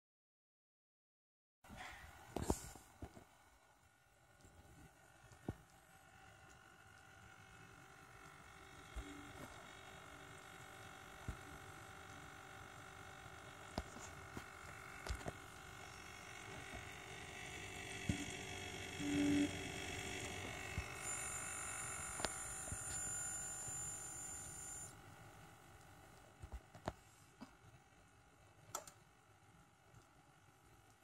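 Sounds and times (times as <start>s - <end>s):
cooler pump whining: 4.2s - 26.7s
higher whine: 13.8s - 25.0s.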